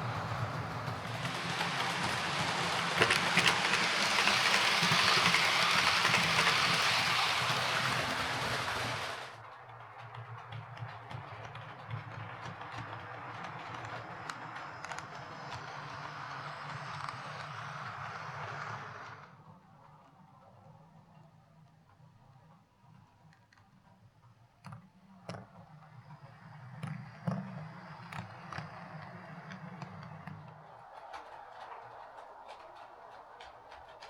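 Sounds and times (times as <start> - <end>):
model train motor hum: 0.0 - 9.4, 11.2 - 19.4
wheels ticking over rails: 0.0 - 19.3.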